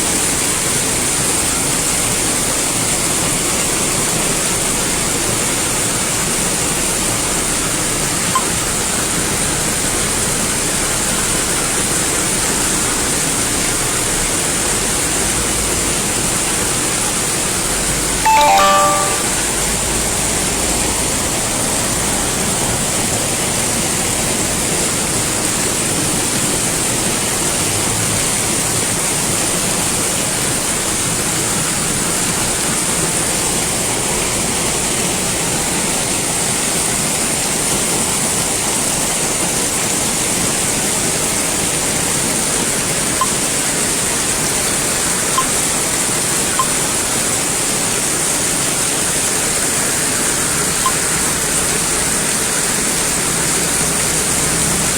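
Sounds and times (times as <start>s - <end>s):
heavy rain pouring: 47.7s - 54.9s.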